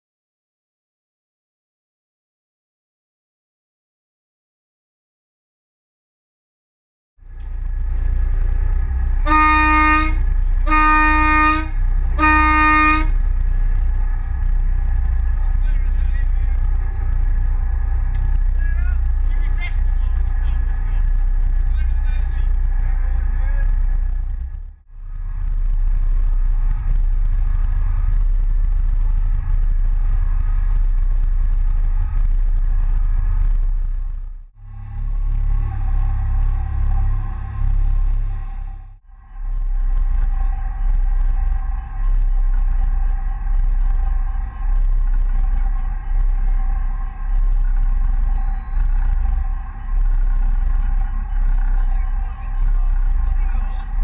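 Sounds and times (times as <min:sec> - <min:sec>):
diesel engines rumbling: 0:07.2 - 0:54.0
boat horn blasts: 0:09.2 - 0:13.2.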